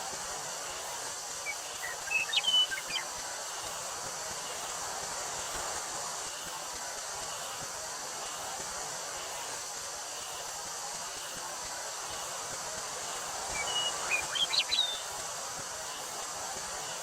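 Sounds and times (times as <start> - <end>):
cicadas droning: 0.0 - 17.0
bird chirps: 1.4 - 3.1, 13.5 - 15.1.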